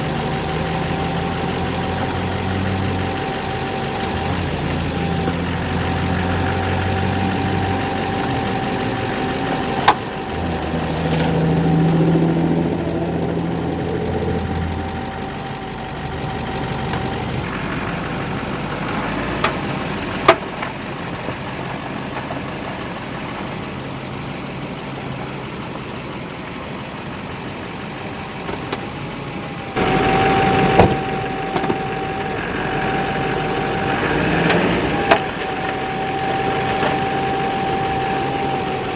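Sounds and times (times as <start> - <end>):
diesel engine running with whine: 0.0 - 38.9
sharp pops from truck front end: 20.2 - 20.8.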